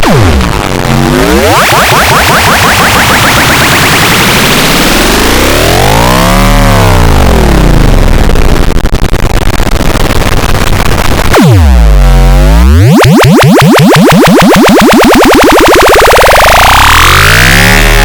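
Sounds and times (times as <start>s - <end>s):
swooping synthetic tones: 0.0s - 8.1s, 11.3s - 18.0s.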